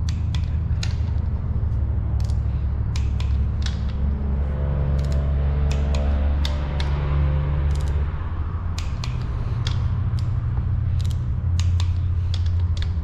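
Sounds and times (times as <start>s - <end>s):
torque wrench ratchet clicks: 0.0s - 1.3s, 2.2s - 4.1s, 5.0s - 7.0s, 7.7s - 8.0s, 8.7s - 13.0s
steady low hum: 0.0s - 13.0s.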